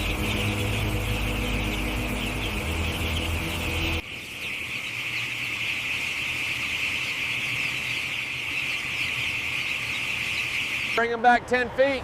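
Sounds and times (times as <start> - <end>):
engine running: 0.0 - 4.0.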